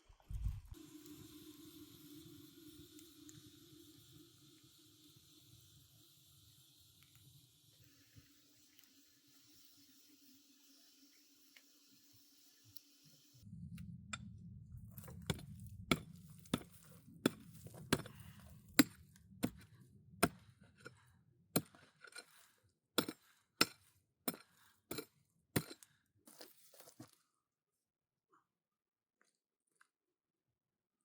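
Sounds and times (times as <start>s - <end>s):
low rumble: 0.2s - 0.8s, 13.4s - 20.8s.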